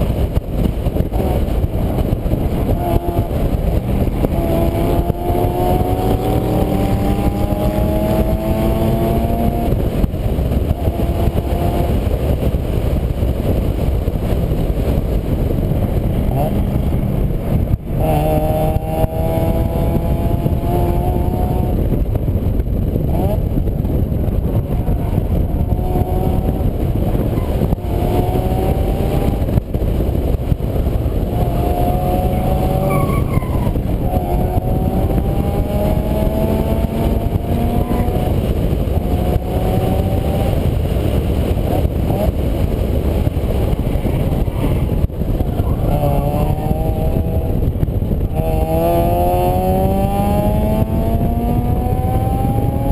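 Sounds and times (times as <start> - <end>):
vehicle engine accelerating: 0.0 - 52.9.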